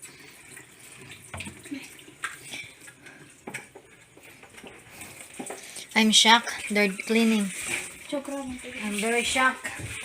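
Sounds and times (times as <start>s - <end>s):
containers clinking and knocking: 3.4s - 10.0s.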